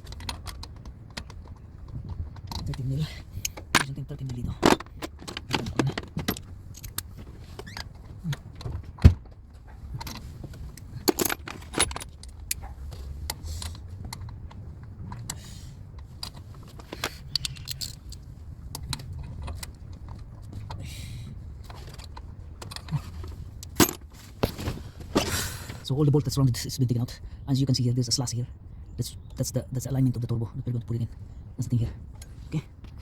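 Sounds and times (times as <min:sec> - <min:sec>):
metal hand tools clinking on bolts: 0:11.0 - 0:12.6.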